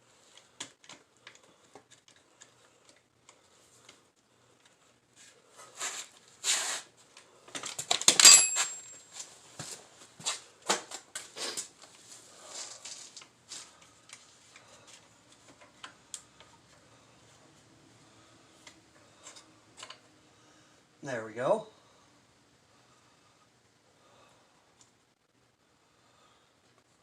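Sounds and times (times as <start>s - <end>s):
metal tools clicking and clattering: 7.6s - 9.1s
ringing metallic clank: 8.2s - 9.0s.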